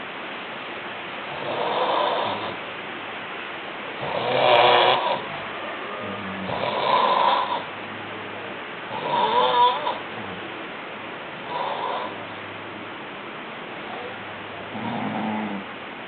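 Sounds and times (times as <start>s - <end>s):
person snoring: 14.7s - 15.7s.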